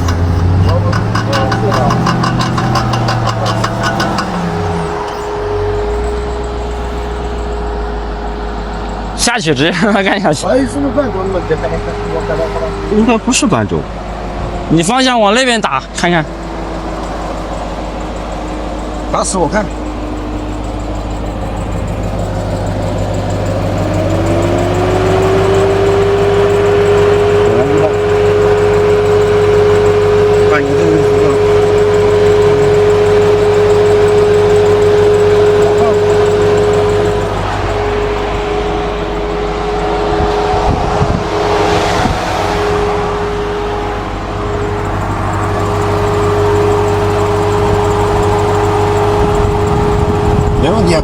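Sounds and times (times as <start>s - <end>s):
short knocks: 0.0s - 5.4s
car engine running: 0.0s - 51.0s
steady rising tone: 34.6s - 49.6s.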